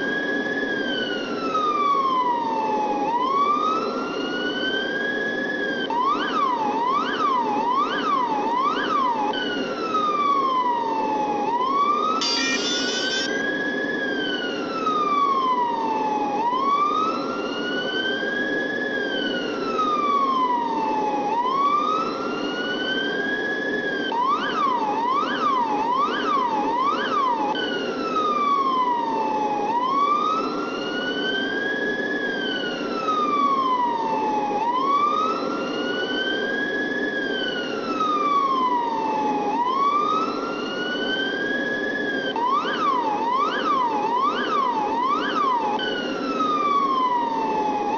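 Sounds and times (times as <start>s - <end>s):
electronic police siren wailing: 0.0s - 47.9s
siren fast yelp: 12.1s - 13.8s.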